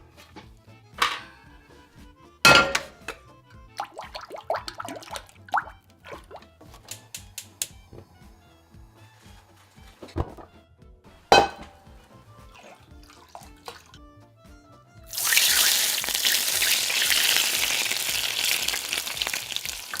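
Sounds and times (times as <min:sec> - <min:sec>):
background music: 0:00.0 - 0:20.0
fish scales sizzling in oil: 0:15.1 - 0:20.0.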